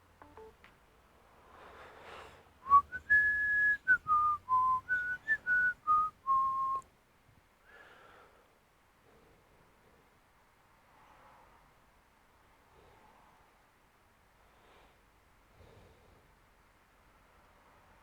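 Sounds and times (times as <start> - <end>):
person whistling a tune: 2.6 - 6.8.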